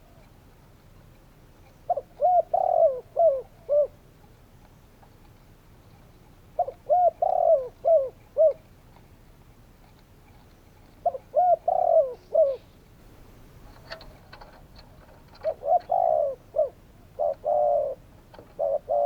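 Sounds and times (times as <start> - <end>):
dove cooing: 1.8 - 4.0, 6.5 - 8.7, 10.9 - 19.0.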